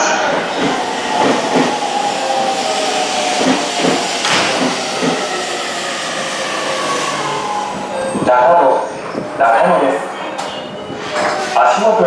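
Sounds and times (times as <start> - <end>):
subway train motor whine: 0.0 - 9.4
train wheels knocking: 0.3 - 5.8.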